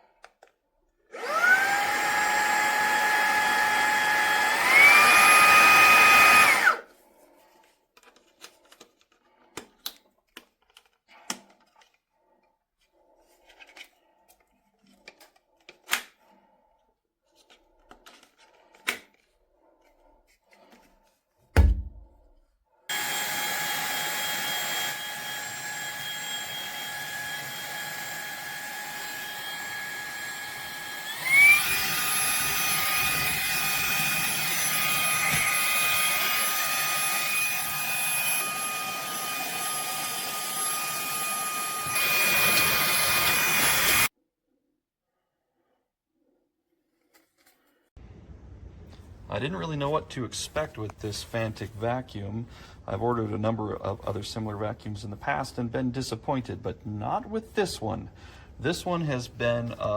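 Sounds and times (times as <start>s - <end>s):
handheld vacuum motor whine: 1.1s - 6.9s, 22.9s - 44.1s
sharp thump: 21.6s - 22.1s.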